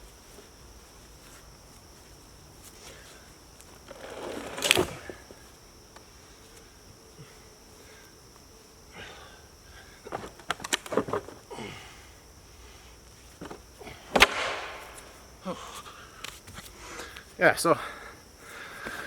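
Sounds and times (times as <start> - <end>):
rock scraping: 3.8 - 5.2.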